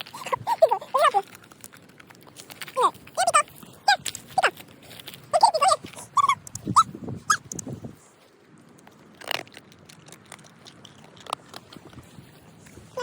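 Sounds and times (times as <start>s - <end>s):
crunches: 0.0s - 7.9s
dog biting and chewing: 0.0s - 8.0s, 8.7s - 13.0s.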